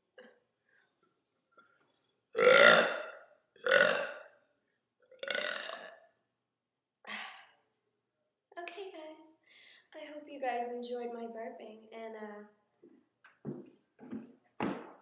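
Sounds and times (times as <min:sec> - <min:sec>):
woman burping: 0:02.4 - 0:04.3, 0:05.1 - 0:06.1.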